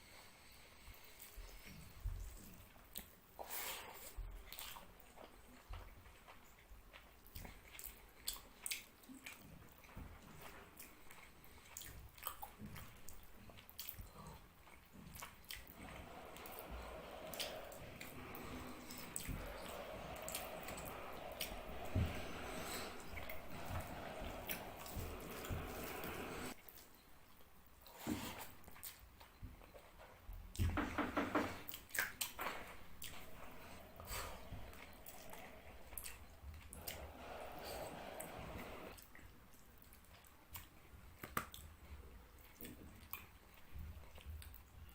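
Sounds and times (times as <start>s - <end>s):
chewing and biting food: 4.3s - 21.5s.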